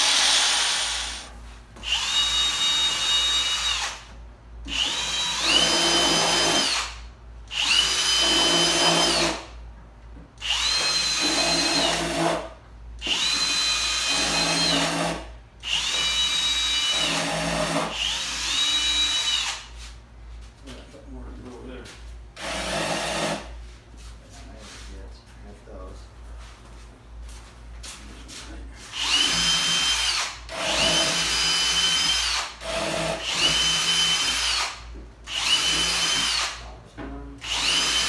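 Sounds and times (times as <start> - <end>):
power drill motor whine: 0.0 - 4.0, 4.6 - 9.4, 10.4 - 12.3, 13.0 - 19.7, 29.0 - 36.6, 37.4 - 38.0.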